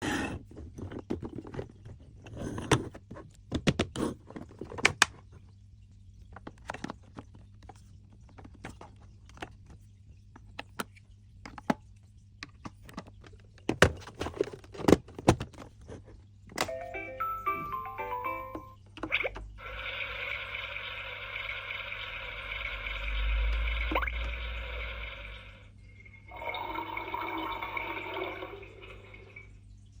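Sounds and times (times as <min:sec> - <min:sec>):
low steady hum: 0:16.5 - 0:30.0.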